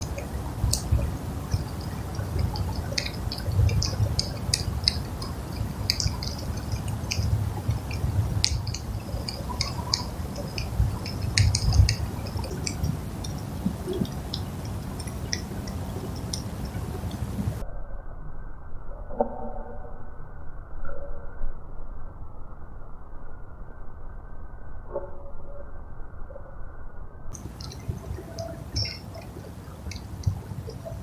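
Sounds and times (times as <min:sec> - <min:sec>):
squirrel chewing peanuts: 0:00.0 - 0:17.6, 0:27.4 - 0:31.0.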